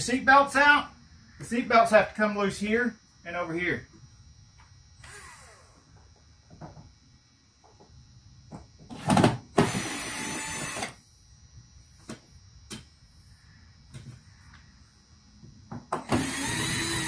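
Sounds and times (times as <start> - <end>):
cordless drill whirring: 5.0 - 5.8, 8.9 - 11.0, 16.0 - 17.0.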